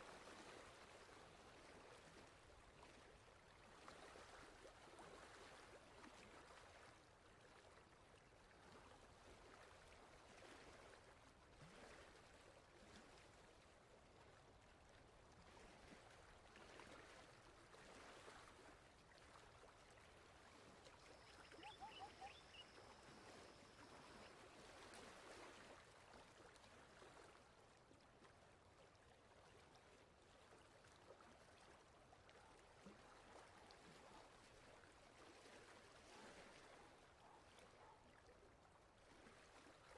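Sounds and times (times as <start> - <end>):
faint chirps: 20.9 - 24.3.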